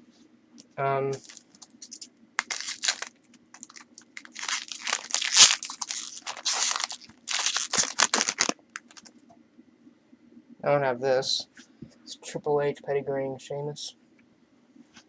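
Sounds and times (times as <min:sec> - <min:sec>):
paper and foil rustling: 0:01.2 - 0:09.1.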